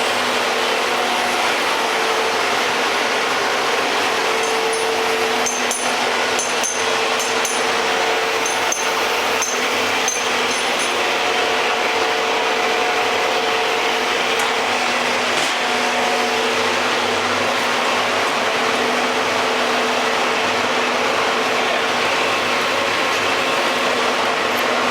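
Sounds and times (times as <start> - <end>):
woodworking machinery droning: 0.0 - 24.9
sharp clicks and knocks: 8.4 - 11.0.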